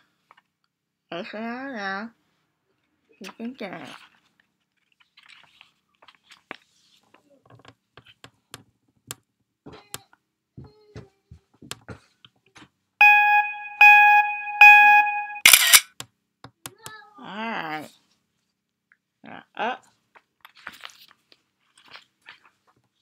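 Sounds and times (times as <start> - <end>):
electronic beeps: 13.0 - 15.8.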